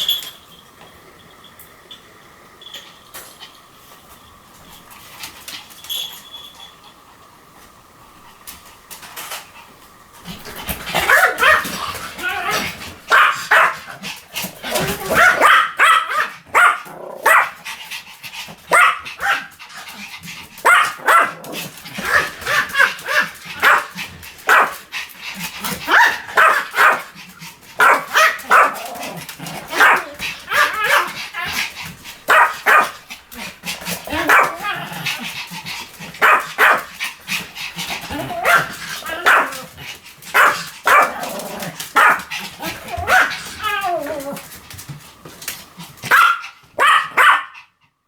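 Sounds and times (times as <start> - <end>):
dog yapping: 10.9 - 13.8, 14.7 - 17.5, 20.6 - 23.9, 27.8 - 29.1, 29.7 - 31.6, 32.3 - 33.0, 34.1 - 34.9, 46.1 - 47.6.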